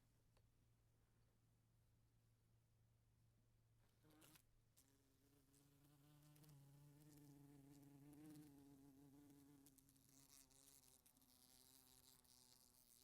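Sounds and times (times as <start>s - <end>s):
wasp buzzing: 10.1s - 13.0s.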